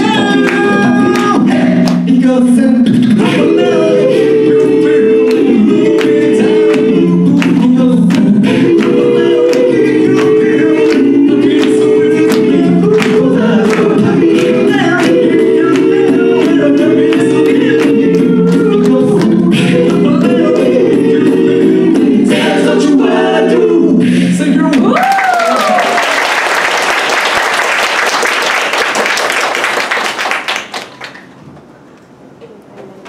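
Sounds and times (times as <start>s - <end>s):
vocal group singing a cappella: 0.0s - 26.1s.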